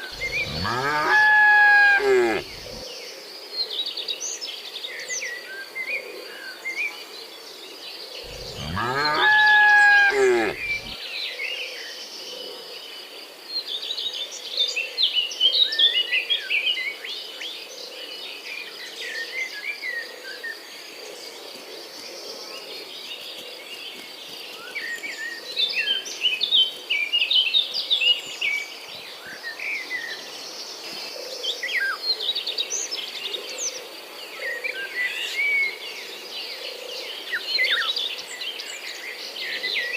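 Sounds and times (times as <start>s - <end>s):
birds chirping: 0.0s - 2.8s, 8.2s - 11.0s
cow mooing: 0.0s - 2.8s, 8.3s - 11.0s.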